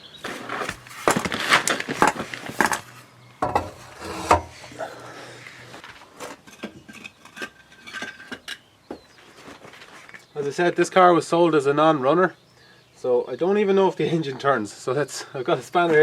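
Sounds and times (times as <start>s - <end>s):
metal pipes clanking and scraping: 0.3s - 5.0s.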